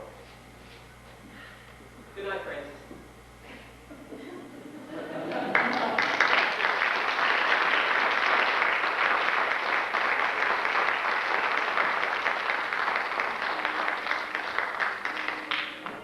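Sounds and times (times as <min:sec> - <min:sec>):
audience applauding: 0:05.2 - 0:16.0.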